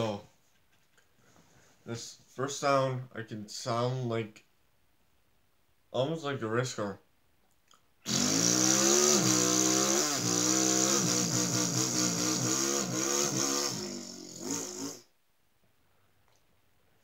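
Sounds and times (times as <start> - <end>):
man imitating race car engine: 8.1 - 15.0.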